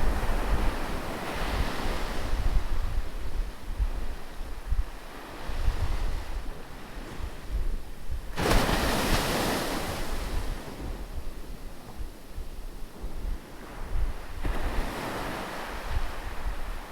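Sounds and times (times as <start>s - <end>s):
wind on microphone: 0.0s - 16.9s
ocean waves crashing: 8.4s - 10.5s.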